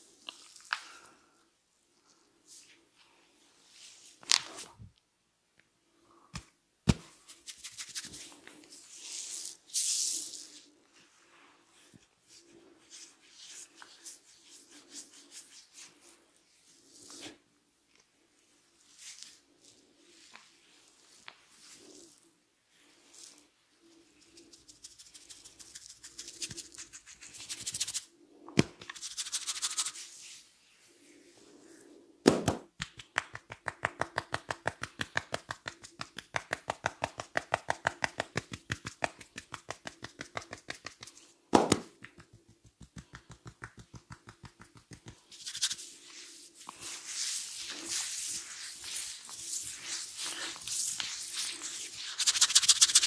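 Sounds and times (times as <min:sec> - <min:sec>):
rubbing and scratching hair: 0:07.2 - 0:17.4, 0:18.8 - 0:28.1, 0:28.8 - 0:31.7, 0:32.8 - 0:53.0
loud sharp smack: 0:32.2 - 0:32.7, 0:41.5 - 0:41.9
hands tapping on head: 0:32.3 - 0:45.8.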